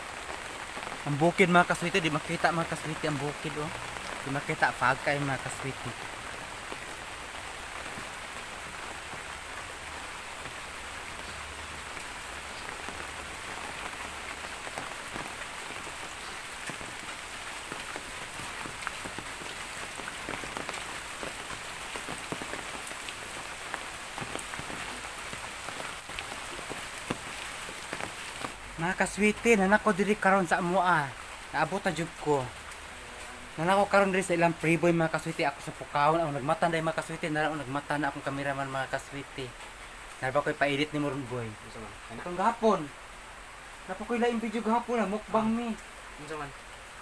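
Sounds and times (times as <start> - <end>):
rain falling: 0.0 - 47.0.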